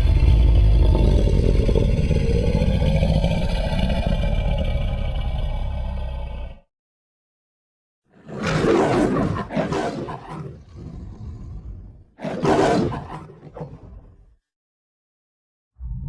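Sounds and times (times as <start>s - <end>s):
monster roar: 0.0s - 6.6s.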